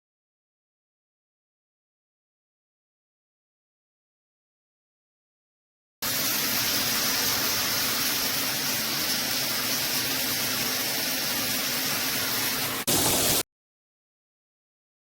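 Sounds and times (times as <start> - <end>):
shower head spraying water: 6.0 - 13.4.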